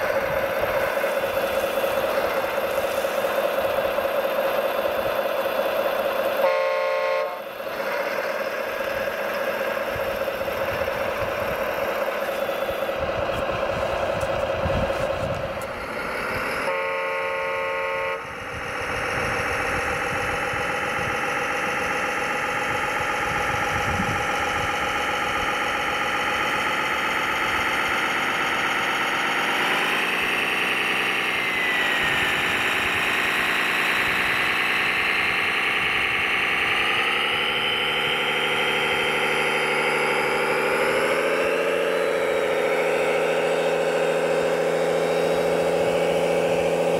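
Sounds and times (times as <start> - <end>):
electric motors and gears whining: 0.0 - 46.9
horn blast: 6.4 - 8.0, 16.7 - 18.4.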